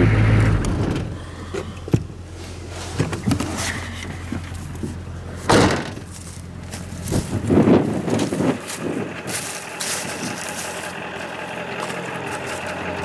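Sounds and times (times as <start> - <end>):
diesel engine idling: 0.0 - 13.0
door slamming shut: 0.3 - 1.3, 5.5 - 6.1.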